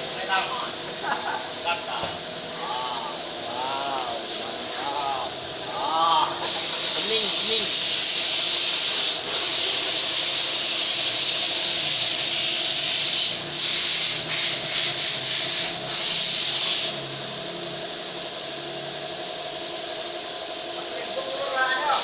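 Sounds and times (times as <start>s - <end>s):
low machine hum: 0.0s - 6.4s
high-pressure spray hissing: 0.0s - 19.0s, 21.2s - 22.0s.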